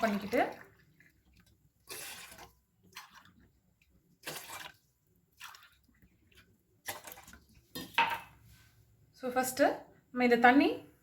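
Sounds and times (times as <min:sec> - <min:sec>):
water pouring into a pot: 0:00.0 - 0:07.8.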